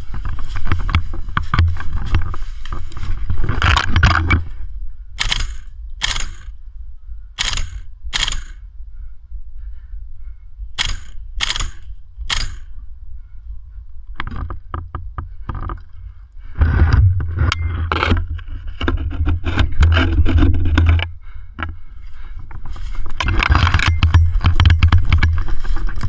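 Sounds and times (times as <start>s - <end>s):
scraping and rustling: 0.0s - 6.5s
light clicks: 5.2s - 6.6s, 7.4s - 8.6s, 10.8s - 12.7s.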